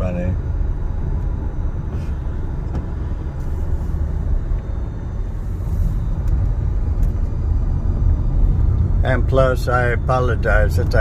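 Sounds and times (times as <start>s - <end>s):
car engine rumble: 0.0s - 11.0s.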